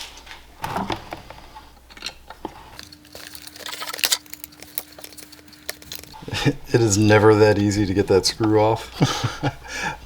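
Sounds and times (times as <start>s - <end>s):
faint steady hum: 0.0s - 10.0s
tools and metal parts clicking: 2.8s - 6.2s.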